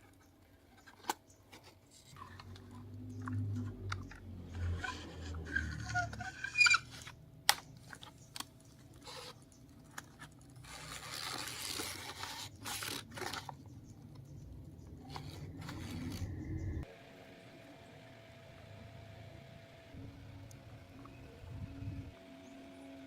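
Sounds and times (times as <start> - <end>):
crunching and scraping: 0.0 - 16.8
brief squeaks: 4.6 - 7.1
low engine drone: 14.0 - 22.9.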